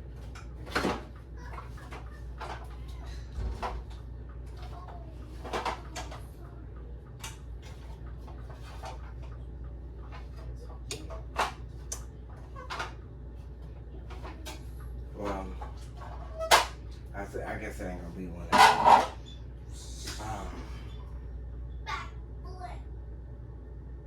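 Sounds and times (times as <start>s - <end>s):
low steady hum: 0.0s - 24.0s
household item clattering: 18.5s - 19.2s.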